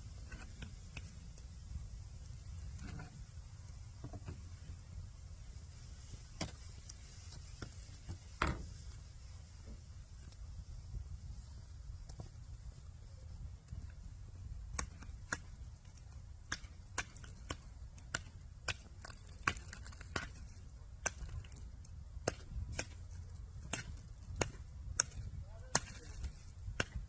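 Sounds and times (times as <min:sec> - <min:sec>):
steady low rumble: 0:00.0 - 0:07.0, 0:08.8 - 0:27.0.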